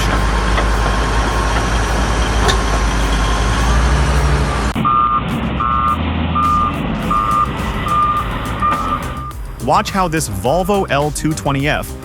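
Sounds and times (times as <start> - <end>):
reversing alarm beeping: 0.0 - 9.4
bulldozer diesel engine rumbling: 0.0 - 9.8.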